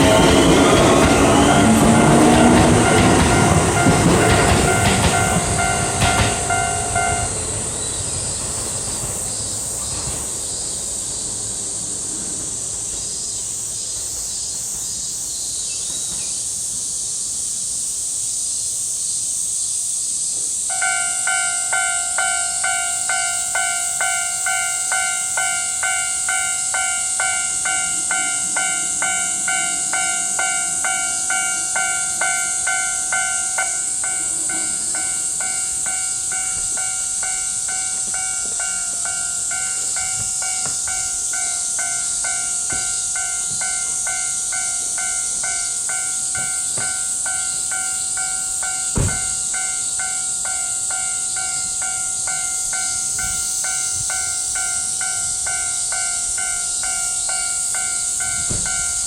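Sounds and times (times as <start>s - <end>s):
level crossing warning bell clanging: 0.0s - 8.7s, 20.7s - 59.0s.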